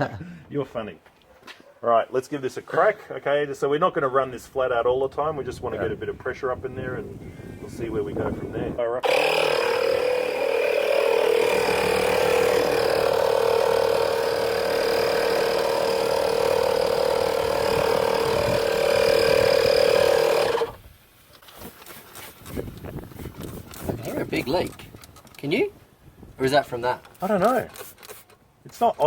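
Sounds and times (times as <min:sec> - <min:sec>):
air compressor humming: 0:08.5 - 0:20.8.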